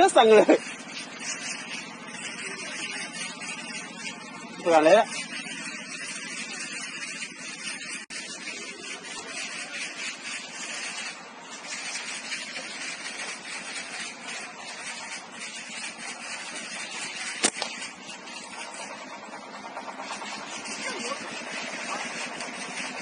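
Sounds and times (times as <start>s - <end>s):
sharp click: 17.4s - 17.8s.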